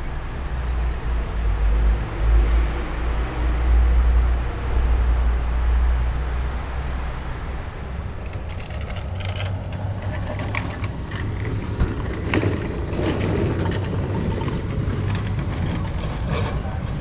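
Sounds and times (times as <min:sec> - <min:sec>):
low rumble and hum: 0:00.0 - 0:10.1
small clicks and clatter: 0:08.0 - 0:16.7.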